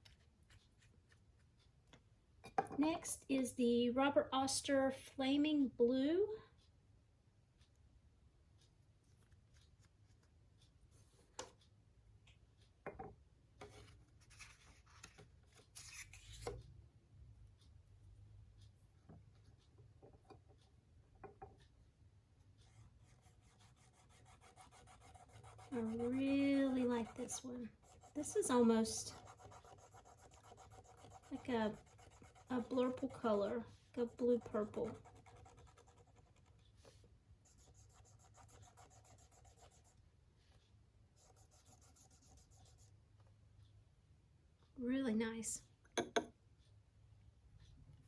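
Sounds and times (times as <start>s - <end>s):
low steady hum: 0.0s - 48.0s
pen scratching on paper: 22.7s - 33.4s, 34.0s - 40.0s, 41.2s - 42.9s.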